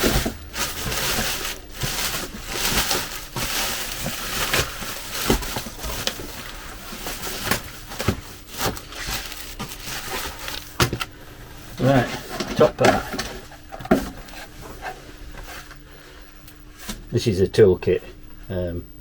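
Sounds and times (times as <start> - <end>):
plastic bag and cardboard rustling: 0.0 - 16.1.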